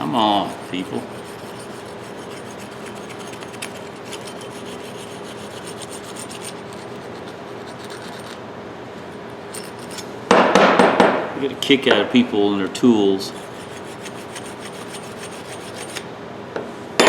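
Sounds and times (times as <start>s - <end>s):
wire brush scrubbing metal: 0.0s - 8.4s, 13.2s - 16.0s.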